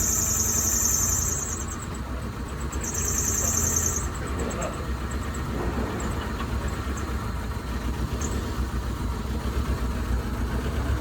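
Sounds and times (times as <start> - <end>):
car engine rumbling: 0.0 - 11.0.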